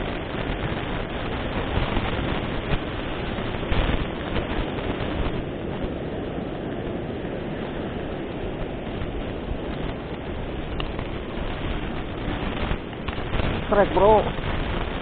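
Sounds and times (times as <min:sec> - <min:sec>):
surf washing on a beach: 0:00.0 - 0:15.0
wind buffeting the microphone: 0:00.0 - 0:15.0.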